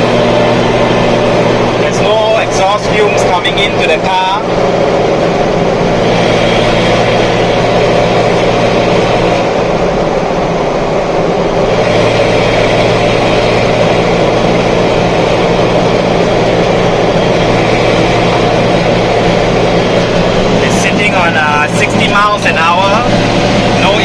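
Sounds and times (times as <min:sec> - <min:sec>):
car engine cruising: 0:00.0 - 0:24.0
road noise: 0:00.0 - 0:24.0.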